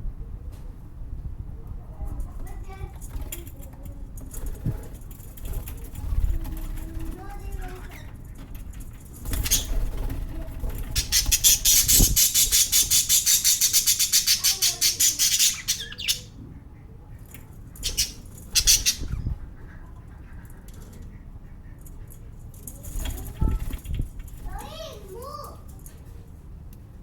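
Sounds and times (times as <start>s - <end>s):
lovebirds squawking: 9.3s - 9.9s, 10.7s - 22.3s.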